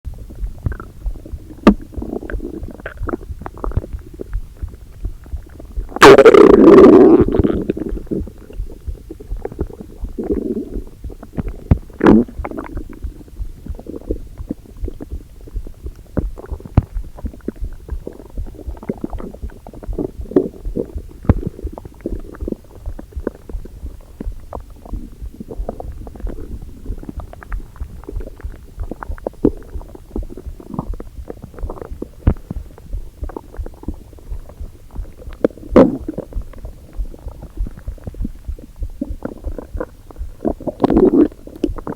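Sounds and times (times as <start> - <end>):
stomach rumbling and gurgling: 0.1 - 41.9.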